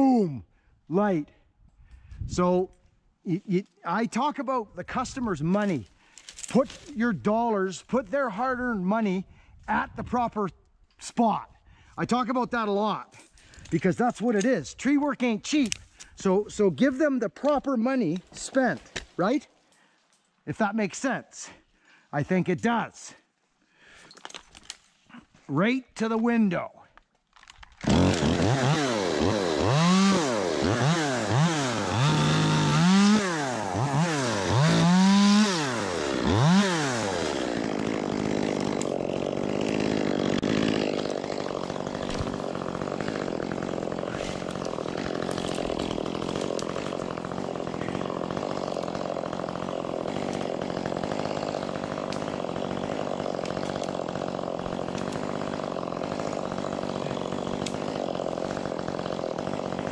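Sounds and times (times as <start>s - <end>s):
chainsaw revving: 27.8s - 59.9s.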